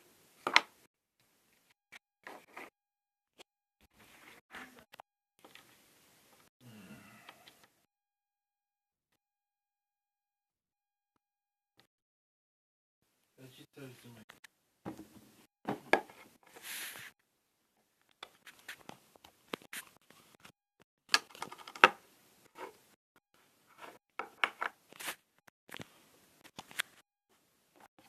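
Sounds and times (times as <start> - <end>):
short scrape: 16.5 - 17.1.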